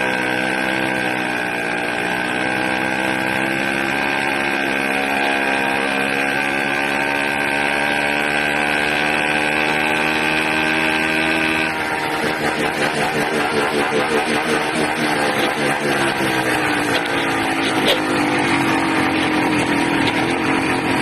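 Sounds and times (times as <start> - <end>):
high-pitched engine whine: 0.0 - 21.0
small engine running: 0.0 - 21.0.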